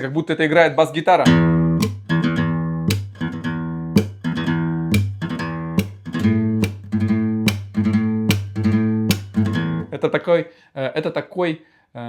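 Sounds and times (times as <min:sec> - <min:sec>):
acoustic guitar strumming: 0:01.2 - 0:09.9.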